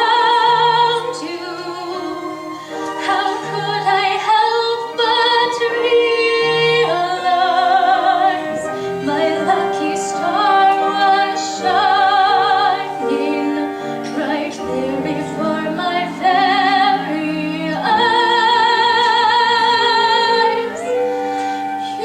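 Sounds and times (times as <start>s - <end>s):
instrumental accompaniment: 0.0s - 22.0s
woman singing with vibrato: 0.0s - 22.0s.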